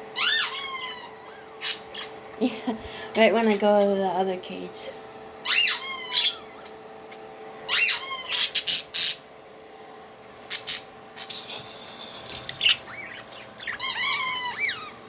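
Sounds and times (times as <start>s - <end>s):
budgies squealing and chirping: 0.1s - 2.2s, 5.4s - 6.8s, 7.6s - 9.3s, 10.5s - 15.0s.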